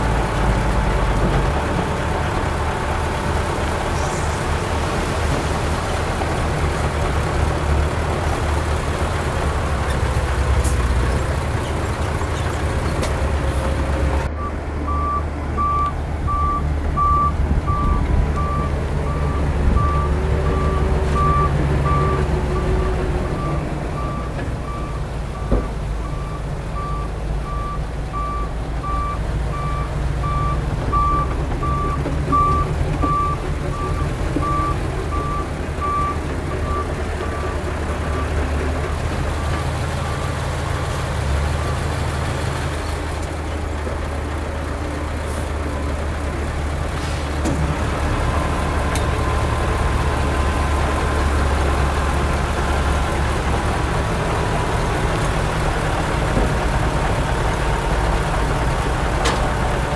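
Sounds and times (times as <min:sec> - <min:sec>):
diesel engines running: 0:00.0 - 0:59.9
reversing alarm beeping: 0:14.3 - 0:22.8.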